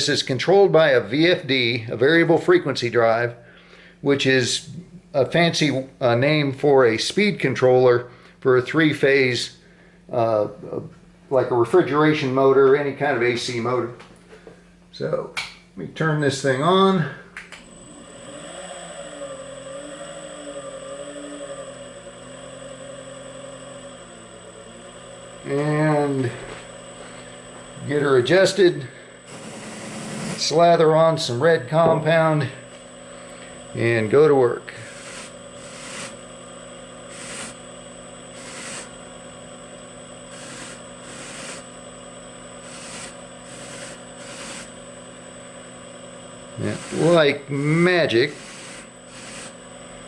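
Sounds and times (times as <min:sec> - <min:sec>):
electric motor hum and whine: 0:00.0 - 0:50.0
wood scrubbing on buffing wheel: 0:17.7 - 0:32.2, 0:33.8 - 0:36.3, 0:37.0 - 0:37.7, 0:38.3 - 0:39.0, 0:40.2 - 0:41.8, 0:42.6 - 0:44.8, 0:46.6 - 0:49.7.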